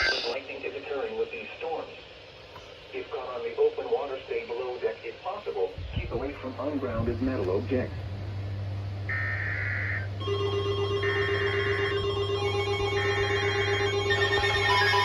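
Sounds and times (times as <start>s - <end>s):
steady held tones: 0.0s - 0.4s, 7.4s - 15.0s
warbling data bursts: 0.0s - 0.4s
steady electrical hum: 0.0s - 15.0s.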